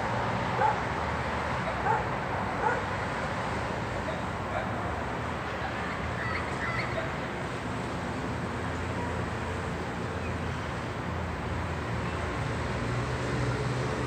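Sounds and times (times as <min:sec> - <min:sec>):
city traffic rumble: 0:00.0 - 0:14.0
distant dog barking: 0:00.6 - 0:00.9, 0:01.6 - 0:02.9.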